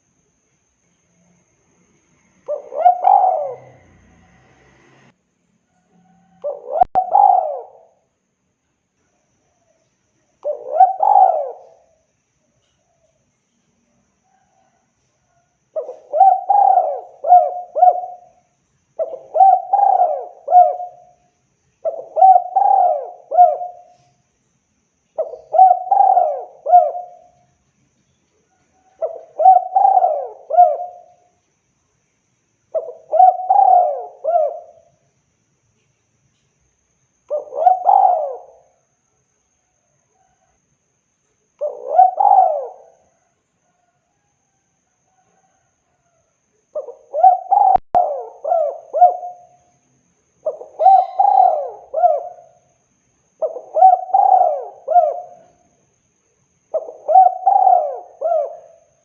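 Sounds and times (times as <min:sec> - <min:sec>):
dove cooing: 0:02.4 - 0:04.6, 0:06.0 - 0:08.0, 0:10.4 - 0:12.0, 0:14.3 - 0:21.2, 0:21.8 - 0:24.1, 0:25.2 - 0:27.4, 0:28.8 - 0:31.3, 0:32.7 - 0:35.0, 0:37.3 - 0:38.8, 0:41.6 - 0:44.6, 0:46.7 - 0:49.7, 0:50.4 - 0:52.7, 0:53.4 - 0:55.8, 0:56.7 - 0:59.0.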